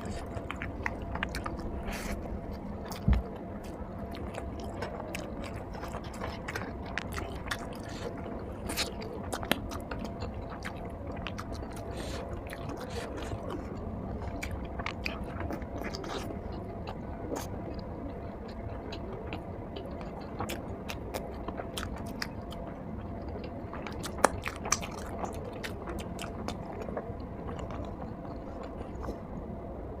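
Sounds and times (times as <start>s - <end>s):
person chewing food: 0.0s - 29.3s
faint steady hum: 0.0s - 30.0s.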